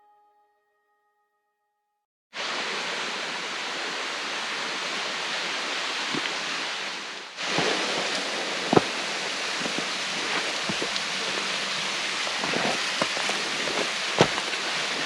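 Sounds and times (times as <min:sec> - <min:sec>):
hiss of falling water: 0:02.4 - 0:15.0
drip-like ticks: 0:09.6 - 0:14.7.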